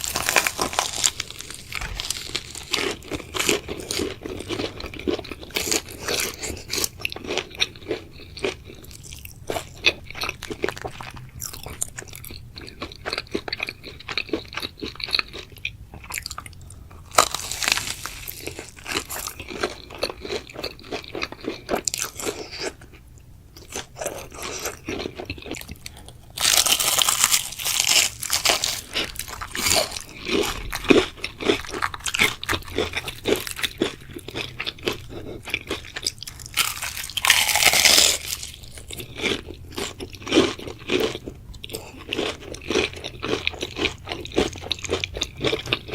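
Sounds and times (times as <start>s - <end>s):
person chewing and crunching food: 0.0s - 45.9s.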